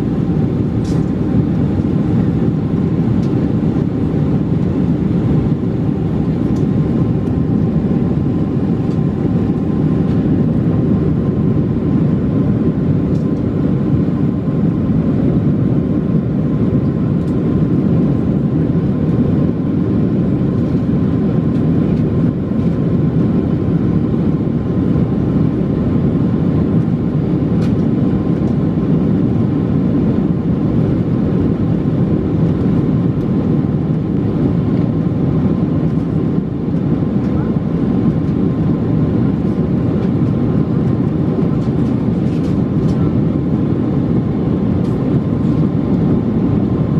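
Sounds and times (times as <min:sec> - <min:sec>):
airliner cabin engine noise: 0:00.0 - 0:46.9.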